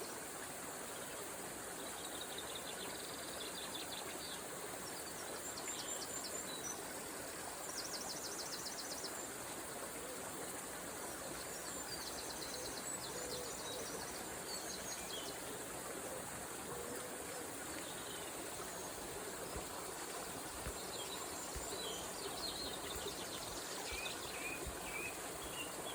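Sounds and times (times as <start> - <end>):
river water flowing: 0.0 - 25.9
songbirds chirping and trilling: 11.4 - 25.9.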